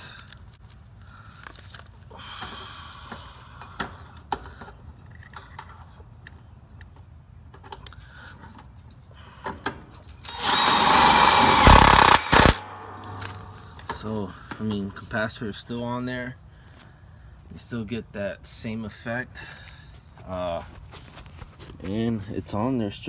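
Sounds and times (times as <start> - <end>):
power drill driving screw: 10.2 - 13.6.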